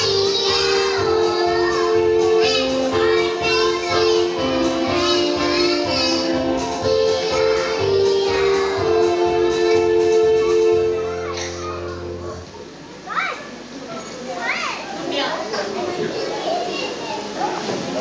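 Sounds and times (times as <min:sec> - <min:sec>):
young children singing: 0:00.0 - 0:12.4
accompanying music: 0:00.0 - 0:12.5.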